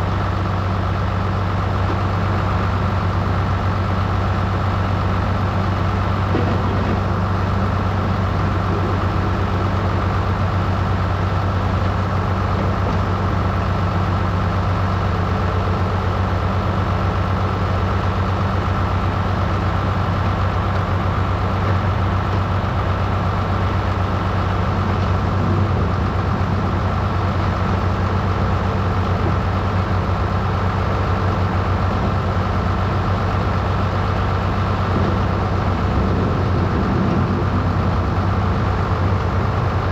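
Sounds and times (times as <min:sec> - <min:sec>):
tractor engine droning: 0:00.0 - 0:39.9.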